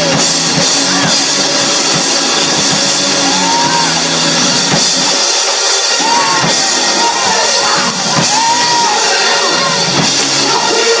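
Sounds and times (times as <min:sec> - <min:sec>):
crashing cymbals: 0:00.0 - 0:11.0
drum hits: 0:00.0 - 0:11.0
live church band music: 0:00.0 - 0:11.0.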